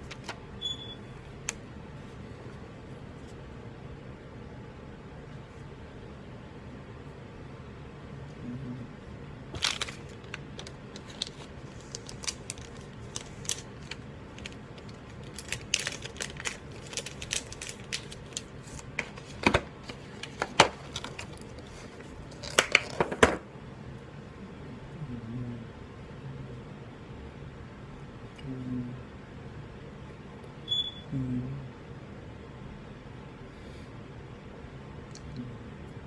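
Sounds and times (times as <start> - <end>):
packaging crinkling: 9.5 - 23.2.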